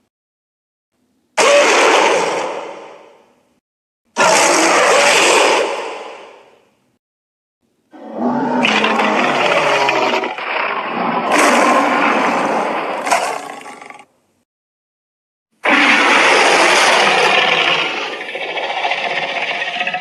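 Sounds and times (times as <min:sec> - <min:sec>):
monster roar: 0:04.2 - 0:05.9, 0:07.9 - 0:14.1, 0:15.6 - 0:20.0.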